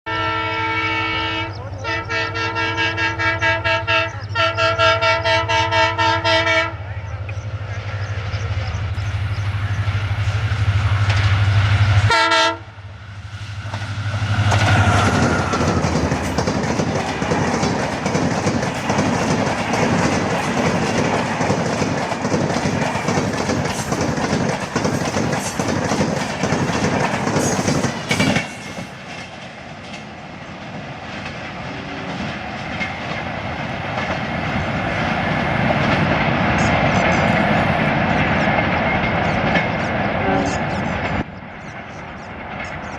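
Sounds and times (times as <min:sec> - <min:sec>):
locomotive horn: 0:00.1 - 0:07.0, 0:12.0 - 0:12.9, 0:14.2 - 0:16.2
locomotive engine running: 0:06.7 - 0:29.6
train wheels clacking over rails: 0:07.3 - 0:12.6, 0:13.2 - 0:42.9.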